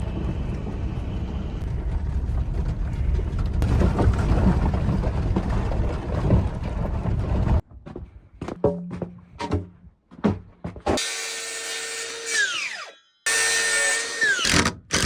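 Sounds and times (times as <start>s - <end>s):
small power tool winding down: 11.0s - 15.0s.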